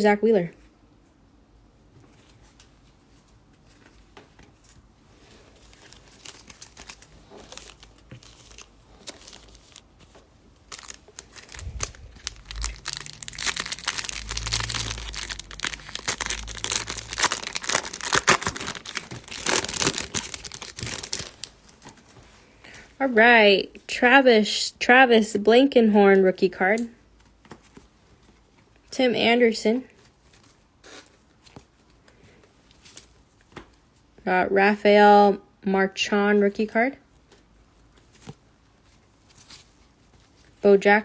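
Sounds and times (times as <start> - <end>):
card pack wrapper crinkling: 5.7 - 22.1.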